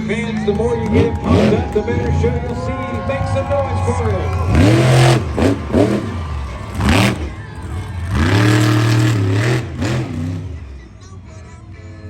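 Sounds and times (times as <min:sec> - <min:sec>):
monster truck engine revving: 0:00.0 - 0:11.2.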